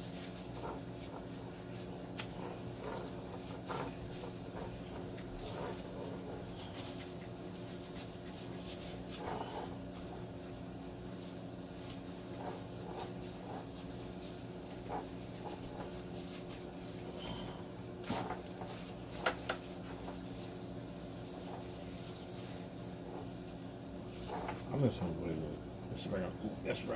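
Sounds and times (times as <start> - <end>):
small clicks and scrapes: 0.0 - 10.3, 11.1 - 24.7
hands rubbing sticky cable: 0.0 - 17.1
steady low hum: 0.0 - 26.9.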